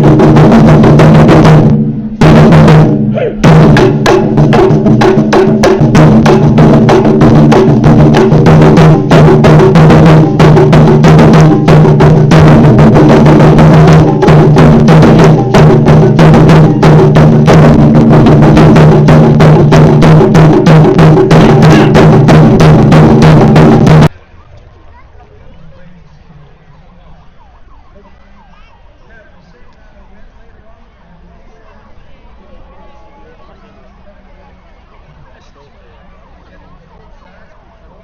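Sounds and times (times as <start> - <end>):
taiko drums playing fast rhythm: 0.0 - 24.1.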